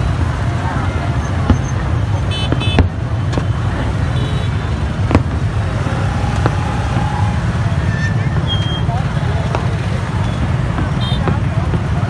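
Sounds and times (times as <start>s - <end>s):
traffic engines rumbling: 0.0s - 12.0s
car horn beeping: 2.3s - 2.9s.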